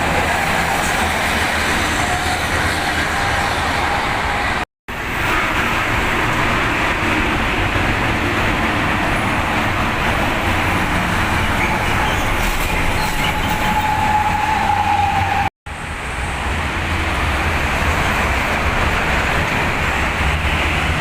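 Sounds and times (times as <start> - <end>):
fast road traffic roar: 0.0 - 21.0
heavy vehicles passing: 15.7 - 21.0.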